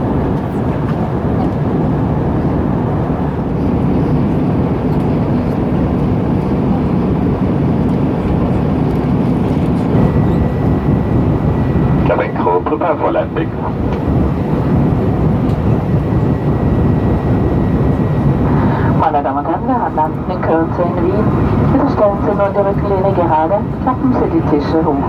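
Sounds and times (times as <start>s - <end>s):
aircraft cabin engine rush: 0.0s - 25.0s.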